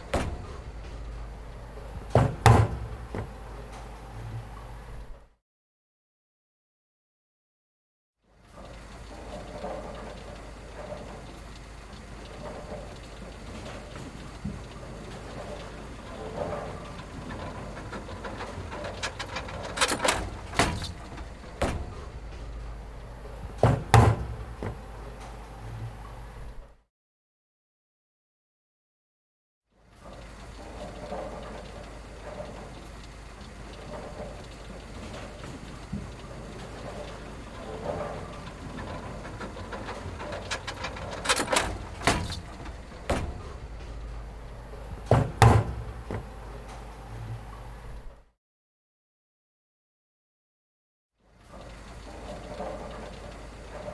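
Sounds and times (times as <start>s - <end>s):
knocks and bumps: 0.0s - 5.2s, 16.3s - 26.7s, 37.8s - 48.2s
steady background noise: 0.0s - 5.2s, 8.6s - 26.6s, 30.2s - 48.2s
steady low hum: 0.0s - 5.2s, 14.6s - 26.6s, 36.1s - 48.1s.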